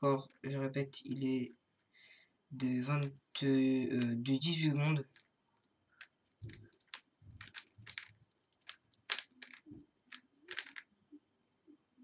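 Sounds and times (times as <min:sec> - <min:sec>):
plastic puzzle cube clicking: 0:05.0 - 0:10.9.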